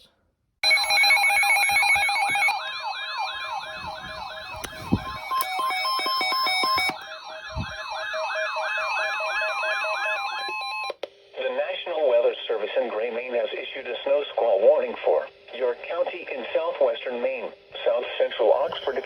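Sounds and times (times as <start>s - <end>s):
steady beeping tones: 0.6s - 10.5s
weather alert alarm warbling: 0.6s - 10.9s.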